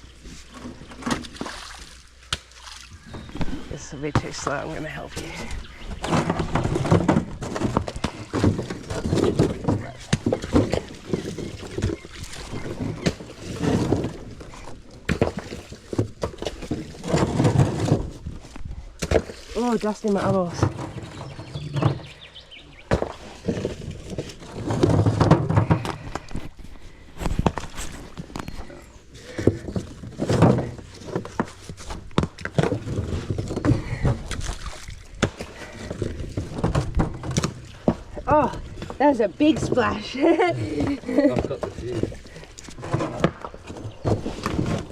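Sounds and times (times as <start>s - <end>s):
water sloshing and splashing: 0.0s - 44.9s
rocks splashing into puddle: 1.0s - 4.6s, 33.7s - 37.6s.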